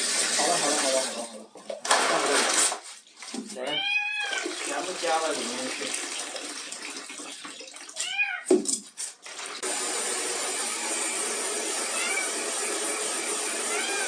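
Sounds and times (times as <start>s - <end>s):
cat meowing: 3.6s - 4.5s, 8.0s - 8.5s, 11.9s - 12.3s, 13.7s - 14.0s.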